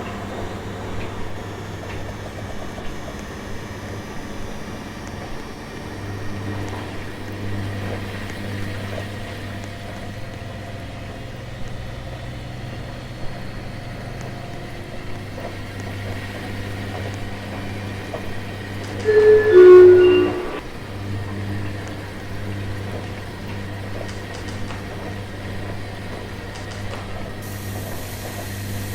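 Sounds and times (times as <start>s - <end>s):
washing machine humming: 0.0s - 28.9s
descending electronic tones: 18.9s - 20.6s.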